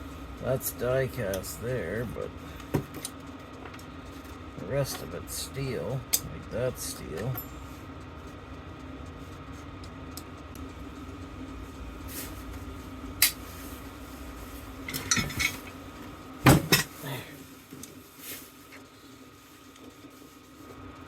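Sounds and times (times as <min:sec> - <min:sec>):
steady low hum: 0:00.0 - 0:21.0
metal parts clinking and clanking: 0:14.9 - 0:15.7.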